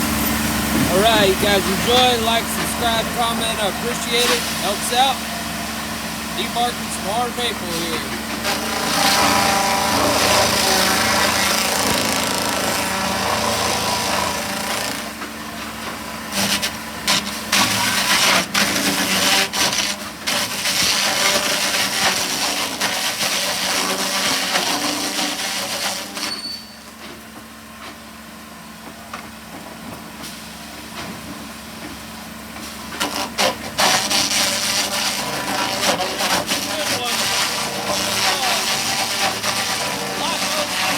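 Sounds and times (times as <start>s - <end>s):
engine running: 0.0s - 22.0s, 26.9s - 40.9s
tool scraping bark from log: 0.9s - 5.2s, 6.5s - 15.2s, 16.3s - 26.6s, 32.8s - 40.9s.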